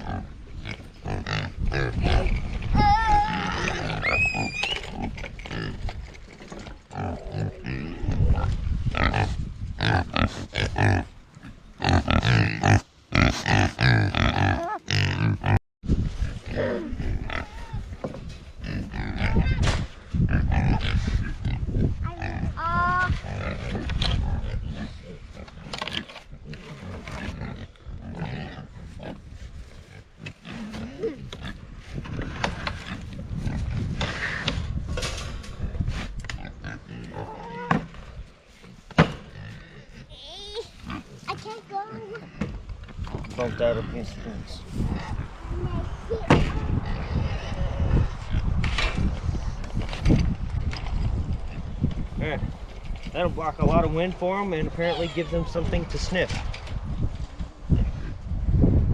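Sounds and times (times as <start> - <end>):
pigs grunting: 0.0 - 15.6, 16.2 - 17.9, 18.6 - 19.6, 20.2 - 34.6, 35.6 - 48.6.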